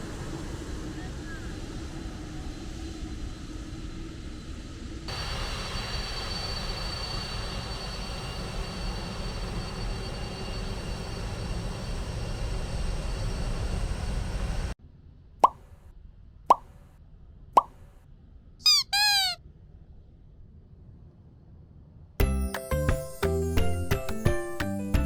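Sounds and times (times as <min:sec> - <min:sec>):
jet engine rumble and whine: 0:00.0 - 0:14.8.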